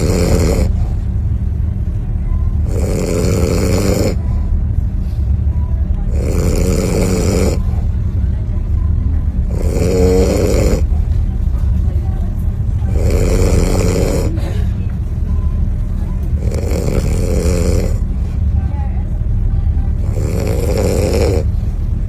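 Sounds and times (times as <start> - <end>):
loud harsh snoring: 0.0 - 0.9, 2.6 - 4.3, 6.1 - 7.7, 9.4 - 10.9, 12.9 - 14.5, 16.4 - 18.1, 20.0 - 21.6
low rumble: 0.6 - 22.0.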